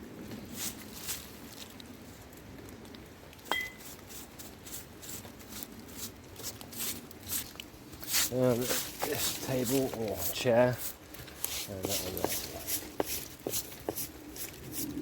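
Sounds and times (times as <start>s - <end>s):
glass bottle clink: 3.5s - 3.8s
hand brush sweeping table: 8.1s - 14.9s.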